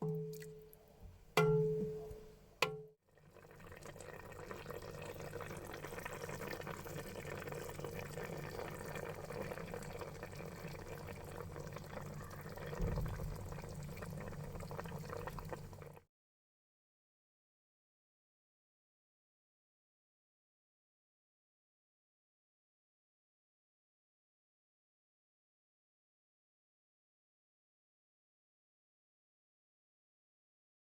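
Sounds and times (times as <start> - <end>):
ringing knocks on pan: 1.4 - 2.9.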